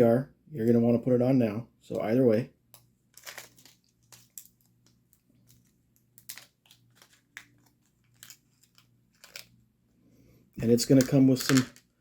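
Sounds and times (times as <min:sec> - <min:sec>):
small plastic parts clicking: 0:02.7 - 0:09.6
packaging crinkling: 0:03.1 - 0:09.6.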